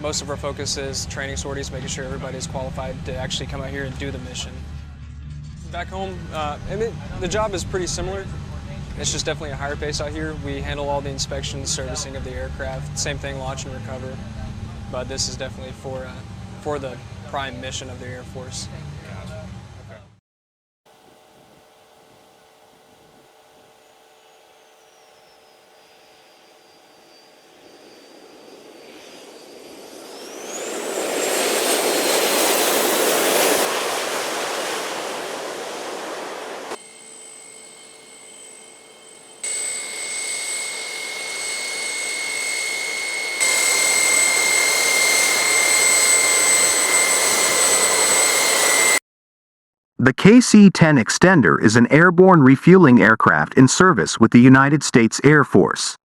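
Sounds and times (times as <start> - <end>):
high-pitched turbine whine: 0.0 - 5.1, 5.8 - 20.0, 20.9 - 49.0
jet engine rushing noise: 26.0 - 49.0.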